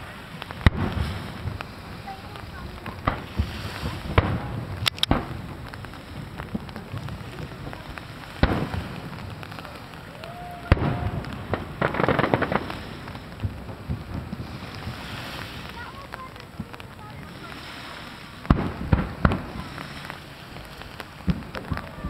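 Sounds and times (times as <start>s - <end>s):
fireworks crackling: 0.0s - 22.0s
firework shell bursts: 3.0s - 5.4s.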